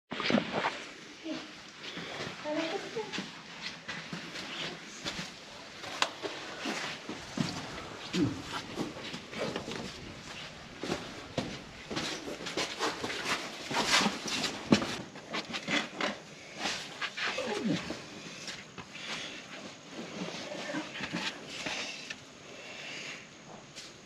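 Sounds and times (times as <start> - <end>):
hard breathing: 6.2 - 9.8
grunts of effort: 8.1 - 8.6.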